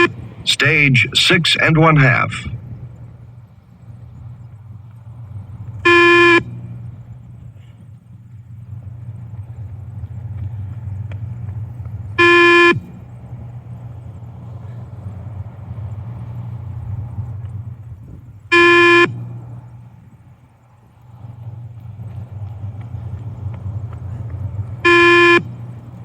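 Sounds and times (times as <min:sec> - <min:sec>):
buzzy timing beeps: 0:00.0 - 0:02.5, 0:05.7 - 0:06.8, 0:12.1 - 0:13.0, 0:18.5 - 0:19.4, 0:24.7 - 0:25.8
steady low hum: 0:00.0 - 0:26.0.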